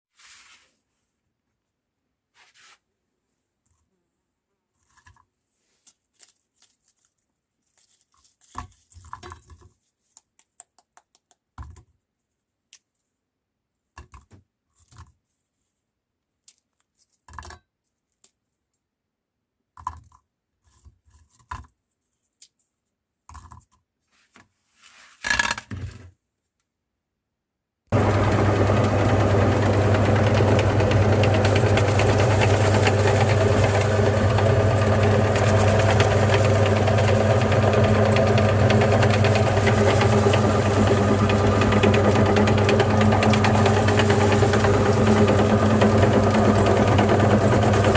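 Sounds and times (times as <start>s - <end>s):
rustling handling noises: 4.8s - 10.5s, 14.7s - 18.8s.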